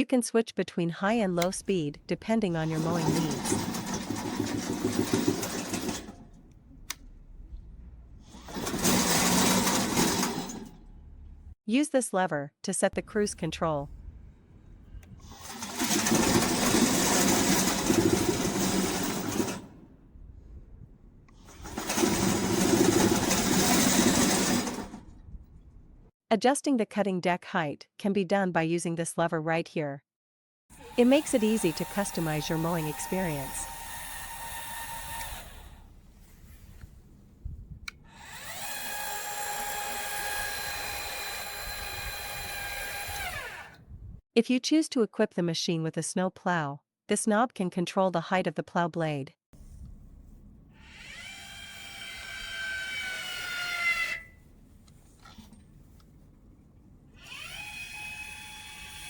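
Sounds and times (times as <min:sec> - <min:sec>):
electric track motors whirring: 0:01.3 - 0:11.5, 0:13.0 - 0:25.1, 0:30.7 - 0:43.8, 0:50.8 - 0:54.4, 0:57.2 - 0:59.0
small electric motor whining: 0:30.7 - 0:37.2, 0:37.8 - 0:43.8, 0:50.7 - 0:54.4, 0:57.2 - 0:59.0.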